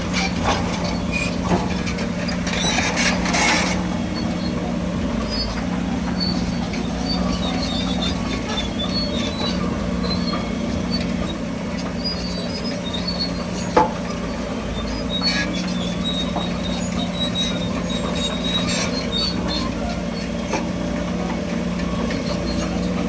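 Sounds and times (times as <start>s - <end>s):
bulldozer diesel engine humming: 0.0s - 23.0s
tracks squealing: 0.0s - 23.0s.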